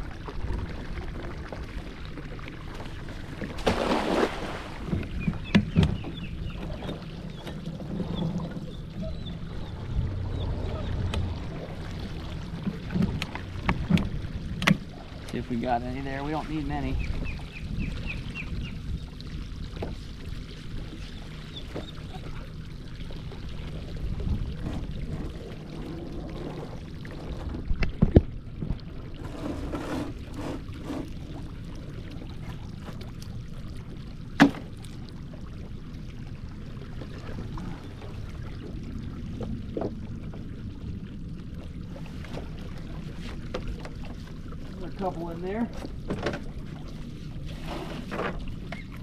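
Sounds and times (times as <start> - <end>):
steady low rumble: 0.0 - 29.2
water pouring and splashing off net: 3.3 - 5.0.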